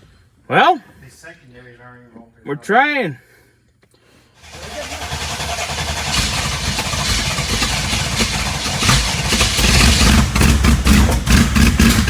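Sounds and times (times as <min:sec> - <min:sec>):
v eight engine running rough: 0:04.4 - 0:12.0.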